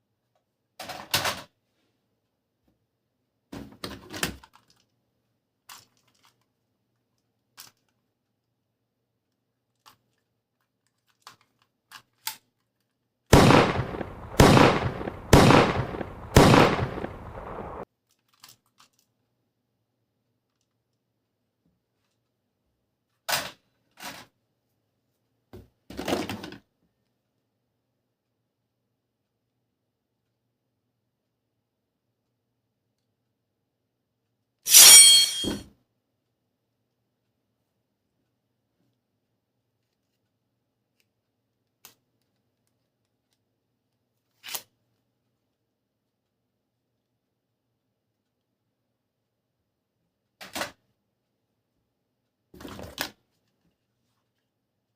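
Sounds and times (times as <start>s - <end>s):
plastic toy parts clattering: 4.0s - 5.0s, 5.7s - 6.5s, 9.7s - 13.0s, 18.1s - 19.1s.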